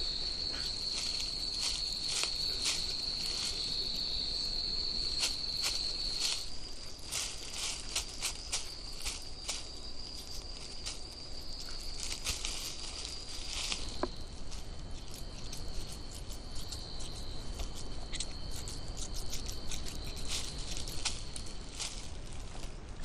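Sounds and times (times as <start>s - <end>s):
insects trilling: 0.0s - 23.0s
light ticks and rustles: 5.1s - 23.0s.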